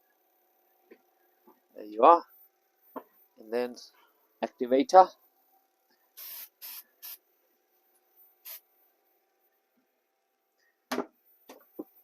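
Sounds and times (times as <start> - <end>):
spray bottle hissing spritzes: 6.2 - 7.2, 8.4 - 8.6.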